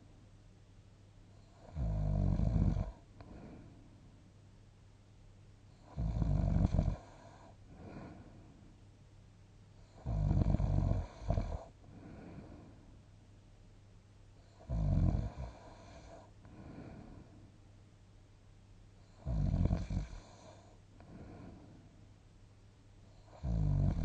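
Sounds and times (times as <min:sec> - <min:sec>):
person snoring: 0:01.6 - 0:03.5, 0:05.8 - 0:08.3, 0:10.0 - 0:12.7, 0:14.6 - 0:17.3, 0:19.2 - 0:21.7, 0:23.2 - 0:24.0
soft breathing: 0:03.0 - 0:04.2, 0:06.9 - 0:08.9, 0:11.2 - 0:13.1, 0:15.4 - 0:17.7, 0:20.1 - 0:22.2.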